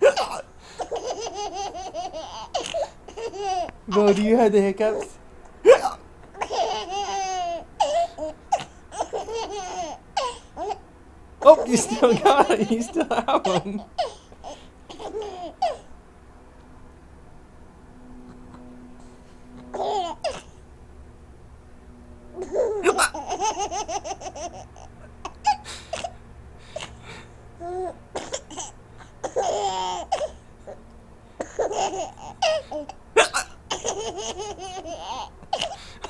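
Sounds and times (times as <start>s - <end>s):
child hiccuping: 0.0s - 1.0s, 5.6s - 7.1s, 32.4s - 34.0s
child laughing: 0.0s - 4.3s, 5.0s - 10.8s, 11.4s - 15.9s, 22.4s - 26.2s, 27.6s - 30.8s, 31.4s - 35.8s.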